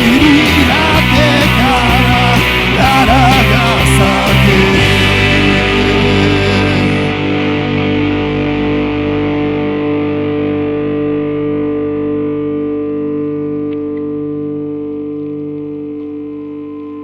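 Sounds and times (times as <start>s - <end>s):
distorted electric guitar chord: 0.0s - 17.0s.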